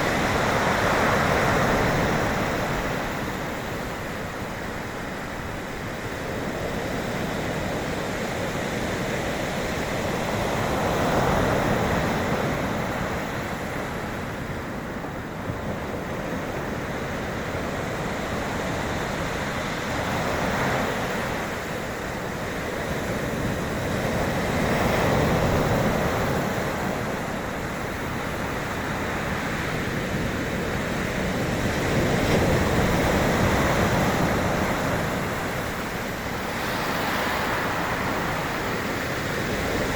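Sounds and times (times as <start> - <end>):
sea waves breaking: 15.9 - 39.9.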